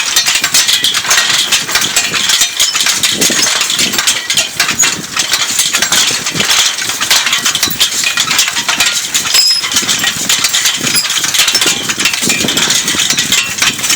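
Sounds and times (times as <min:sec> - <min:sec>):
cultivator and harness rattling: 0:00.0 - 0:13.9.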